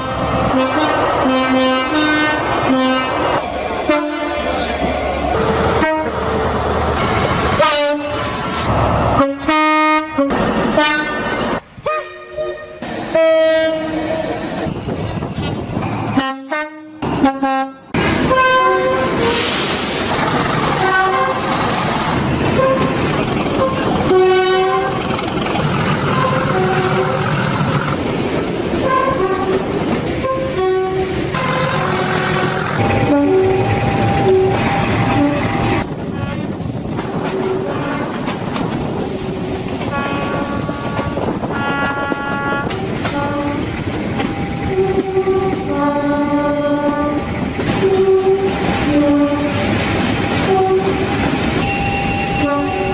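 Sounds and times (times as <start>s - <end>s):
train horn blasts: 0.0s - 3.2s, 3.9s - 4.5s, 5.4s - 6.2s, 7.6s - 8.2s, 9.2s - 14.2s, 16.2s - 19.5s, 20.8s - 21.5s, 23.6s - 25.0s, 26.2s - 27.5s, 30.2s - 36.6s, 37.4s - 38.3s, 39.9s - 43.6s, 44.7s - 49.6s, 50.4s - 52.9s
train running noise: 0.0s - 52.9s.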